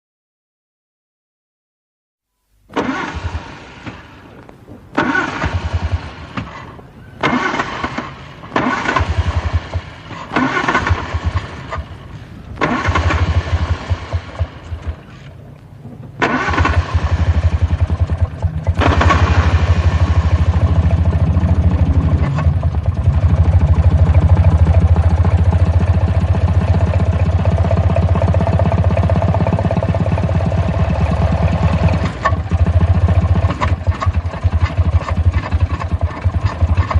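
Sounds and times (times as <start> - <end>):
car starter cranking: 2.7 - 25.8, 31.4 - 36.9
car engine idling: 2.8 - 36.9.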